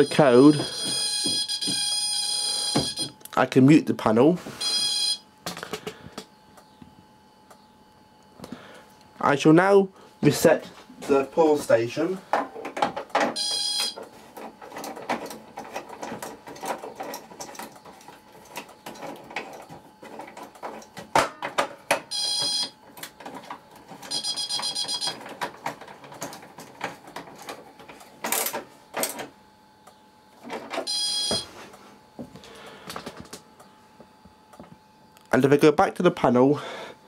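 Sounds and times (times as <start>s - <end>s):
high-pitched electronic tones: 4.6s - 5.2s, 13.4s - 14.0s, 24.1s - 25.2s, 30.9s - 31.5s
call point clicks and rattles: 12.4s - 29.3s.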